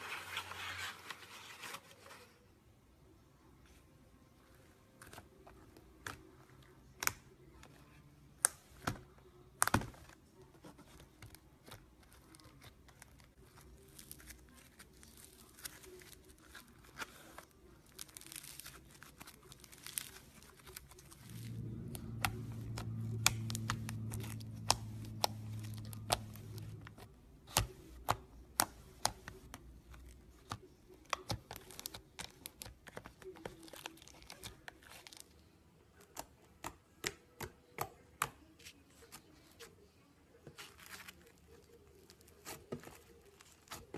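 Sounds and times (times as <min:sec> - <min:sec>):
low steady hum: 0:02.3 - 0:36.1.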